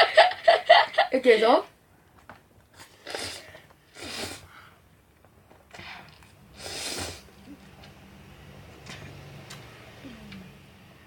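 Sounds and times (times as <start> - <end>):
noisy breaths while eating: 2.7 - 5.0, 5.7 - 7.5
faint low hum: 4.4 - 11.0.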